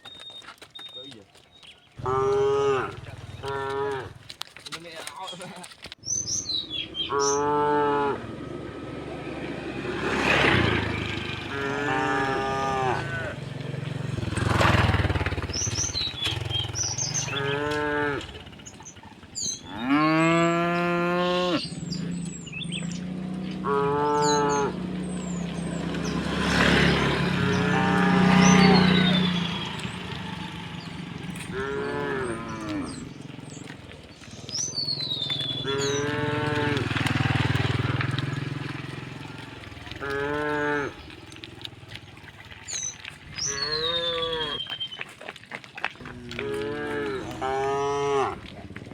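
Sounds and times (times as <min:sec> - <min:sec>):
birds chirping: 0:00.0 - 0:48.9
cattle mooing: 0:02.0 - 0:04.3, 0:07.0 - 0:18.8, 0:19.4 - 0:33.8, 0:35.2 - 0:41.7, 0:43.4 - 0:44.7, 0:46.1 - 0:48.9.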